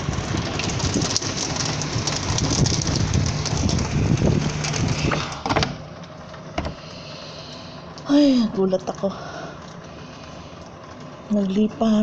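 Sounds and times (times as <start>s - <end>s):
strong wind and heavy rain: 0.0s - 5.2s.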